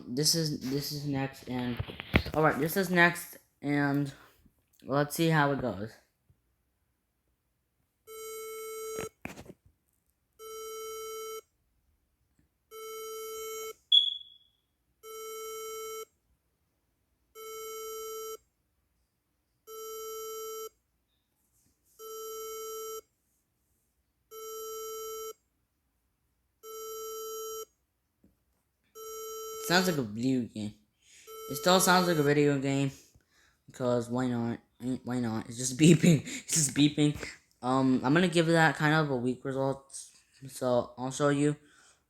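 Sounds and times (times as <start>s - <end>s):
buzzy alarm beep: 13.9s - 14.6s.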